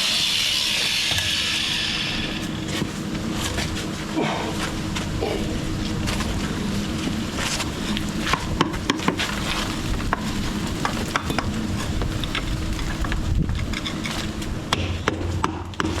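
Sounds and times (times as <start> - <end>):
hand tools scraping rubble: 6.0 - 14.5.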